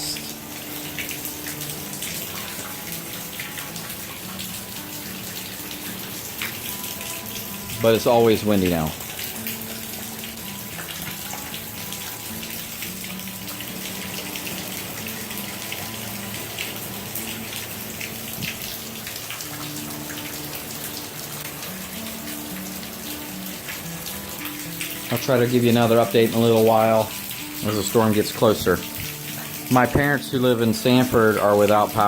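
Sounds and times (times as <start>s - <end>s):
light rain hissing: 0.0s - 32.0s
raindrops ticking: 0.0s - 32.0s
soft background music: 0.0s - 32.0s.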